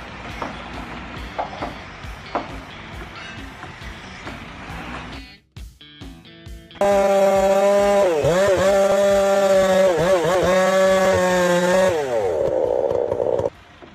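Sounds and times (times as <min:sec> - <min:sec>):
engine-driven power saw: 0:06.8 - 0:13.9.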